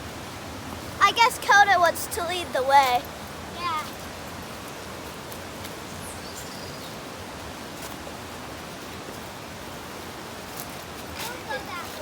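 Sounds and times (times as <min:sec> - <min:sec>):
waterfall rushing: 0:00.0 - 0:05.9.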